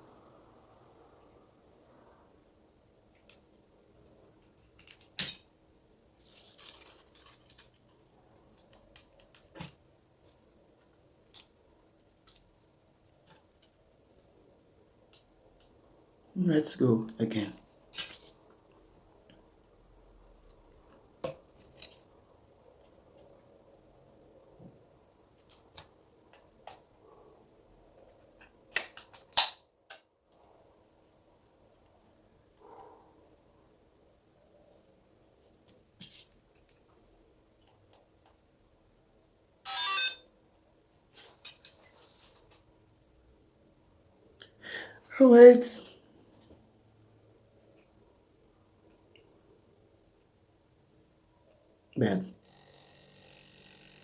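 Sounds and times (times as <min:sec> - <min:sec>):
small parts and tools clicking: 0:06.3 - 0:08.0.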